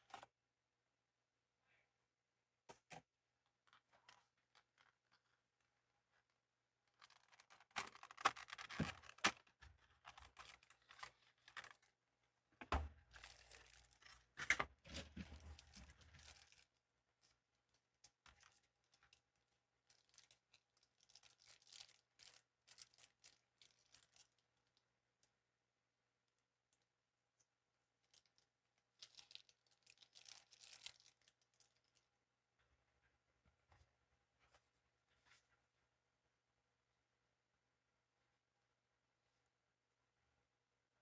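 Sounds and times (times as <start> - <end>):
packaging tearing and crinkling: 7.0 - 11.8.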